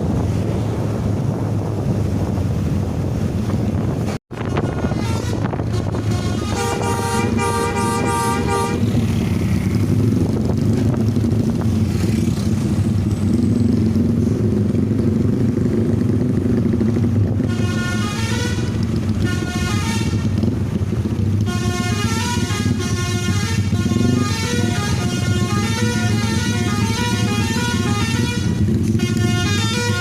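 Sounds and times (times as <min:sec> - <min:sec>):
bus engines rumbling: 0:00.0 - 0:30.0
traffic: 0:00.0 - 0:30.0
multi-tone musical bus horn: 0:04.3 - 0:09.0, 0:17.4 - 0:20.5, 0:21.4 - 0:30.0.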